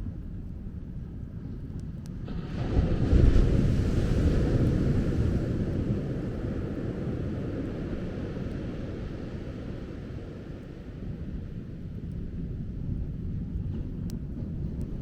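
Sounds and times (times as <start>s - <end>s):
wind rumble on microphone: 0.0s - 15.0s
wave breaking on beach: 2.3s - 10.0s.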